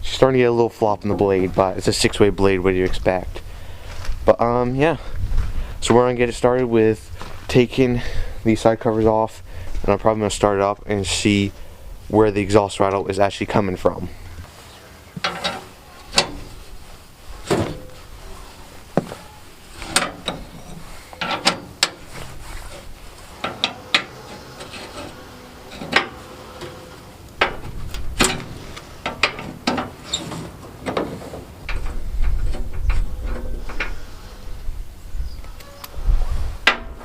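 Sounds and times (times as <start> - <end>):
hand tools clanking on metal: 15.2 - 16.7, 19.0 - 34.0.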